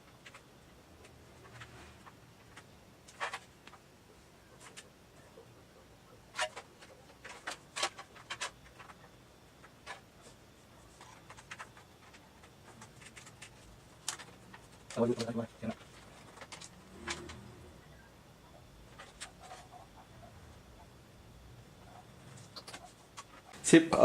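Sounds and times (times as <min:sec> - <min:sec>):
cables clicking inside computer case: 0:00.0 - 0:03.8, 0:06.3 - 0:10.2, 0:10.9 - 0:17.5.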